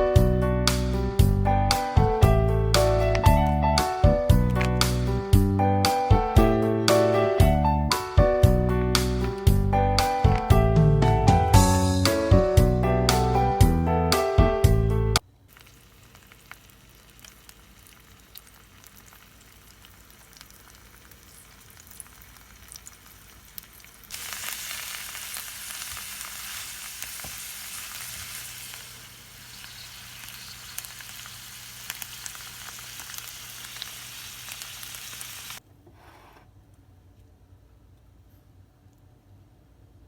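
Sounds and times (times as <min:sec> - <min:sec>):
food sizzling in a pan: 0:15.5 - 0:35.6.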